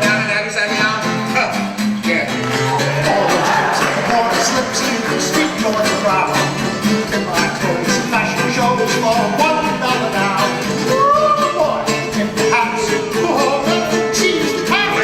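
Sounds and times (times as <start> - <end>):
acoustic instrument accompaniment: 0.0 - 15.0
person singing: 2.6 - 15.0.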